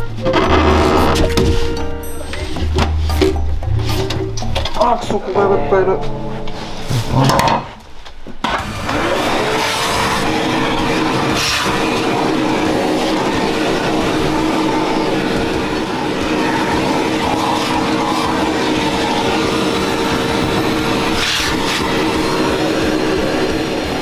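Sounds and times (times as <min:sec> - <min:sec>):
vacuum cleaner motor whine: 0:08.4 - 0:24.0.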